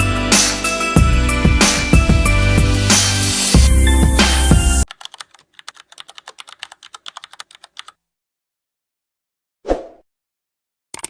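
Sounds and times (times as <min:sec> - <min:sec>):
background music: 0:00.0 - 0:04.9.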